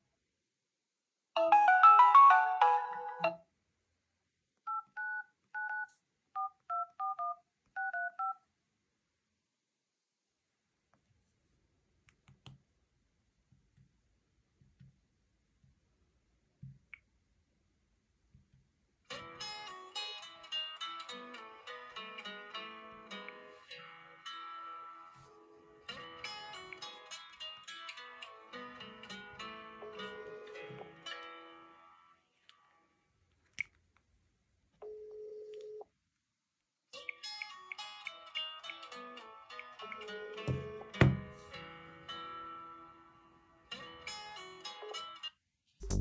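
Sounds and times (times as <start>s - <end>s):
phone ringtone melody: 1.4s - 3.4s
keypad dialing beeps: 4.7s - 8.4s.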